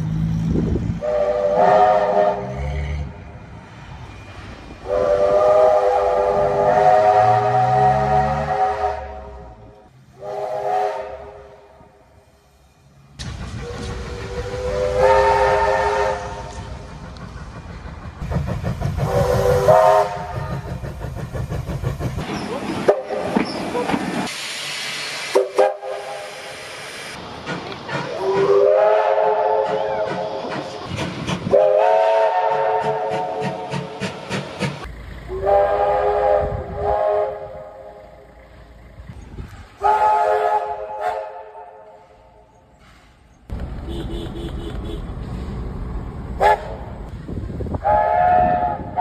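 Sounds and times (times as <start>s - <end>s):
train rumbling: 0.0s - 49.0s
locomotive whistle blasts: 1.0s - 2.8s, 4.8s - 9.6s, 10.2s - 11.7s, 13.5s - 16.7s, 19.1s - 20.5s, 28.2s - 30.2s, 31.5s - 33.5s, 35.3s - 38.0s, 39.8s - 42.0s, 47.8s - 49.0s.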